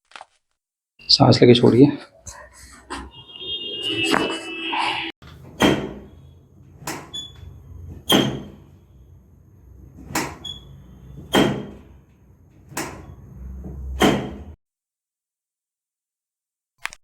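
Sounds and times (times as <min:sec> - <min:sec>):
sharp thumps of back adjustment: 0:05.6 - 0:06.1.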